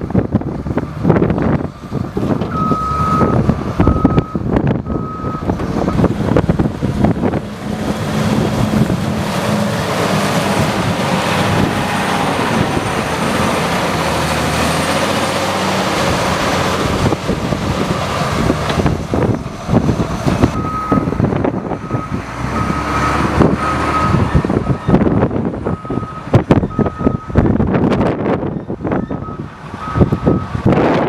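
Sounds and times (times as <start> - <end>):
heavy engine running under load: 0.0 - 31.0
reversing beeps: 2.4 - 6.0, 20.6 - 21.1, 21.8 - 25.0, 25.7 - 27.4, 28.6 - 30.6.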